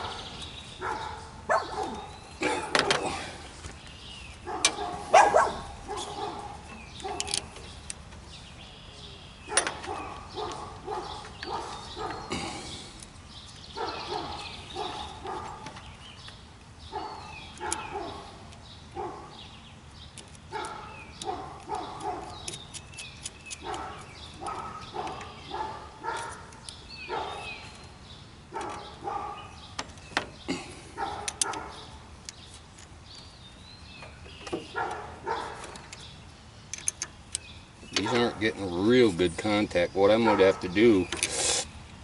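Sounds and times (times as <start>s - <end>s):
dogs barking: 0.0s - 3.3s, 4.4s - 7.5s, 9.5s - 12.5s, 13.7s - 15.8s, 16.9s - 19.5s, 20.5s - 22.5s, 23.6s - 27.8s, 28.4s - 29.7s, 30.5s - 32.0s, 34.6s - 35.9s, 37.9s - 39.1s, 40.0s - 41.0s.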